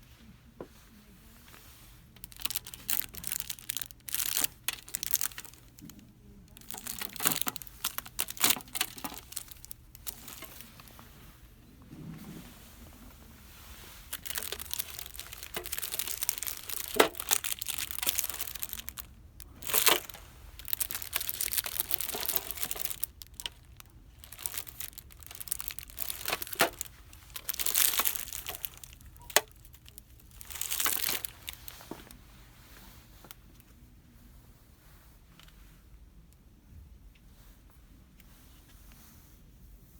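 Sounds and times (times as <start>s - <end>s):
packaging crinkling and rustling: 2.2s - 11.1s, 13.8s - 32.2s.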